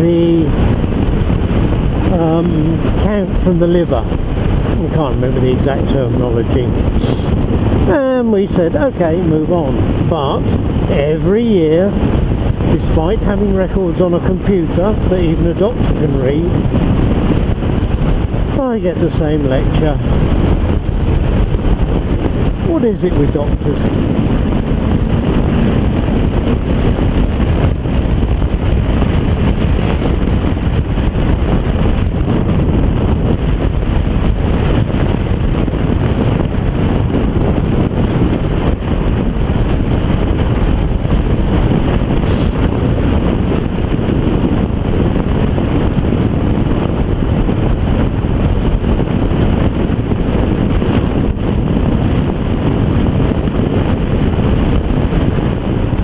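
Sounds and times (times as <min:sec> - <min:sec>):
heavy wind buffeting microphone: 0:00.0 - 0:56.0
motorcycle engine running: 0:19.9 - 0:56.0.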